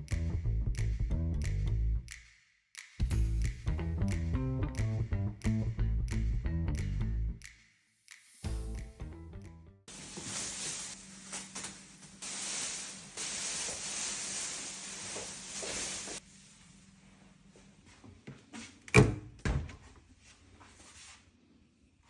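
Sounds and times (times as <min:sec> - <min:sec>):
packaging rustling: 0:09.9 - 0:16.2.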